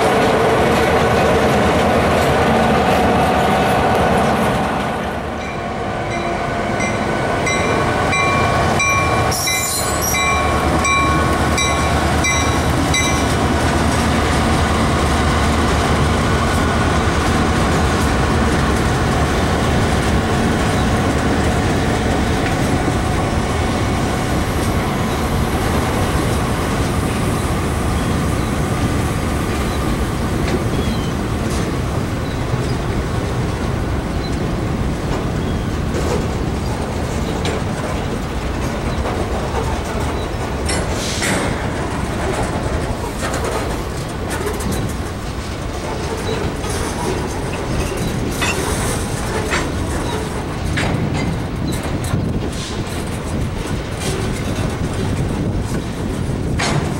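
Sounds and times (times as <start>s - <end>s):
train wheels clicking over rails: 0.0s - 56.9s
repeating high ringing tone: 6.2s - 13.2s.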